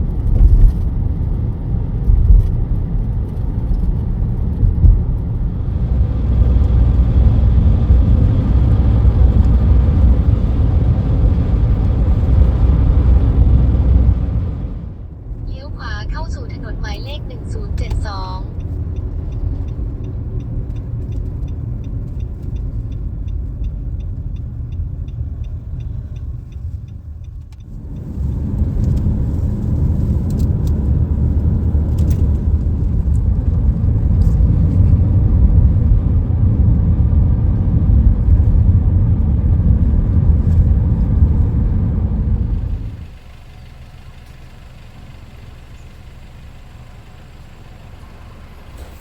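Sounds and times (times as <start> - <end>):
car road and engine rumble: 0.0 - 49.0
regular ticking: 15.4 - 28.1.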